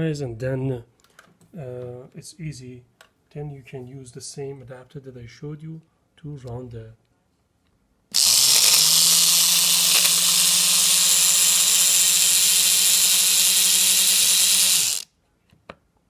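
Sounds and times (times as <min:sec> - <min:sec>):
electric shaver motor humming: 0:08.2 - 0:15.0.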